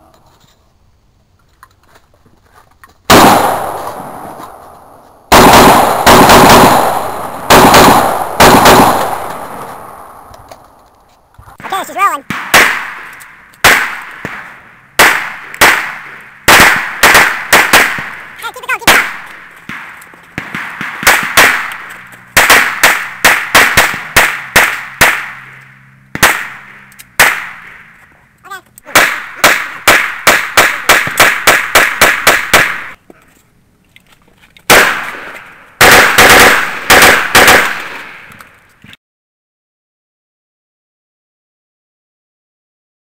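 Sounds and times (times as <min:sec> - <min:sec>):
rapid gunshots with echo: 0:03.1 - 0:04.2, 0:05.3 - 0:10.0, 0:11.6 - 0:27.9, 0:28.9 - 0:33.0, 0:34.7 - 0:38.3.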